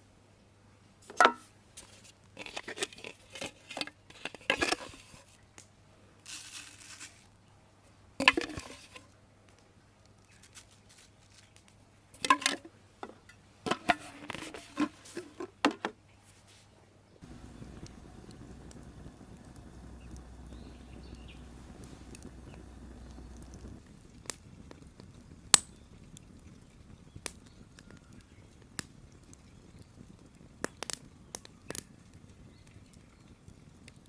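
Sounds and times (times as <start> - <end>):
scraping and crackling: 1.0 - 5.4, 6.3 - 7.3, 8.2 - 9.1, 10.2 - 15.9, 17.2 - 31.9.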